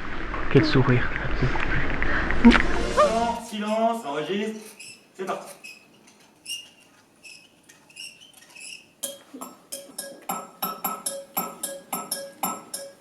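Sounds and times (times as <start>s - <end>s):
faint high squeaks: 3.4s - 9.5s
music with quick even beat: 9.0s - 13.0s.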